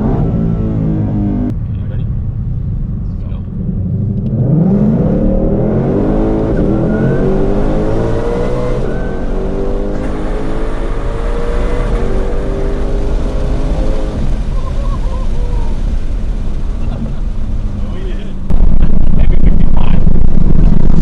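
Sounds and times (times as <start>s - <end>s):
car engine revving under load: 2.4s - 14.6s
supercharger whine: 18.5s - 21.0s.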